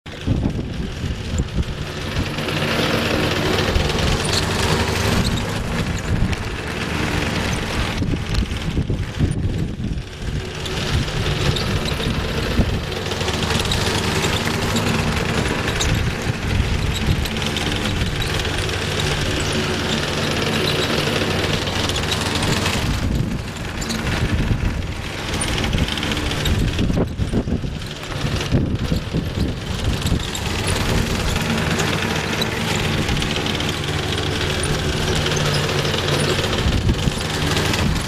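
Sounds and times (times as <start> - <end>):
lawnmower engine running: 0.0 - 38.0.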